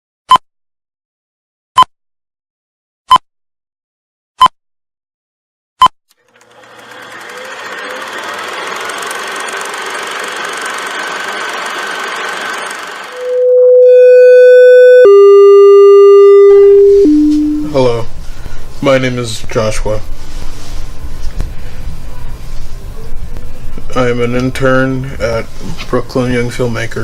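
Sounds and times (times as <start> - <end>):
mechanical whirring: 6.2 - 13.4
held electronic tone: 12.3 - 17.8.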